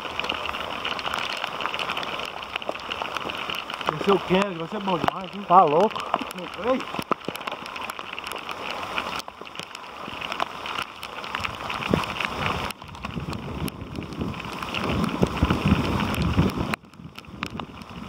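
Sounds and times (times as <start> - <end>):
rain falling: 0.0 - 18.0
wind buffeting microphone: 11.3 - 18.0.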